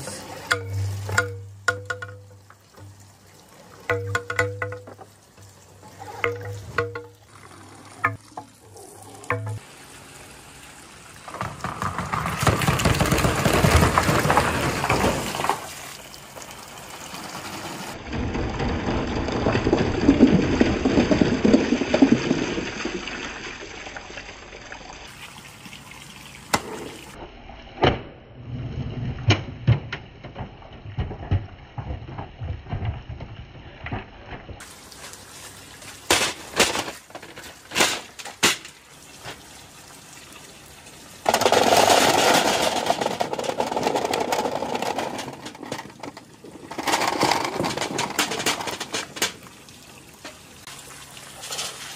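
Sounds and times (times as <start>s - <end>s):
marbles rolling down marble run: 11.3s - 15.5s, 41.2s - 49.2s.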